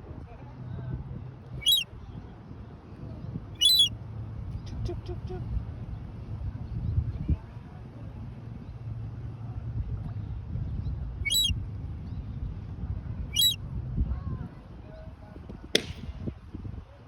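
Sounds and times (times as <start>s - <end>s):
gull chick chirping: 1.6s - 1.8s, 3.6s - 3.9s, 11.3s - 11.5s, 13.4s - 13.6s.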